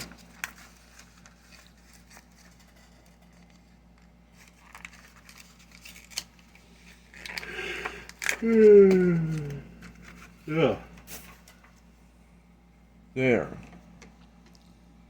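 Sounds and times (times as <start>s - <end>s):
plastic packaging clicks and crackles: 0.0s - 10.2s
plastic packaging rustling: 0.0s - 11.9s.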